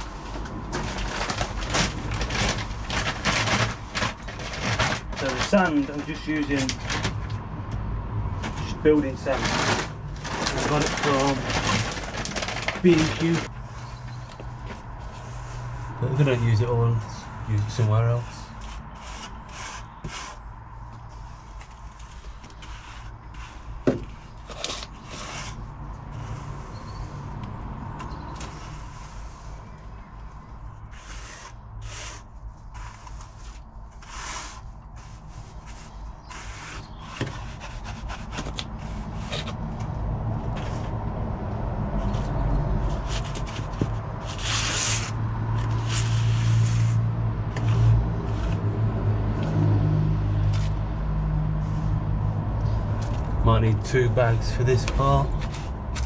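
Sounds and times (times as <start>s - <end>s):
sand scraping on bench: 14.8s - 27.2s, 30.8s - 39.5s, 42.0s - 48.7s.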